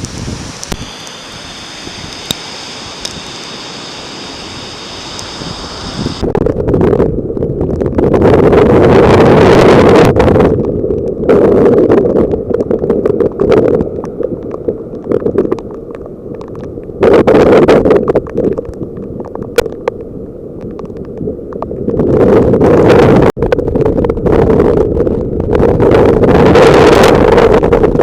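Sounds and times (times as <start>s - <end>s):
surf rushing: 0.0s - 6.2s
wind buffeting microphone: 0.0s - 15.7s, 20.7s - 28.0s.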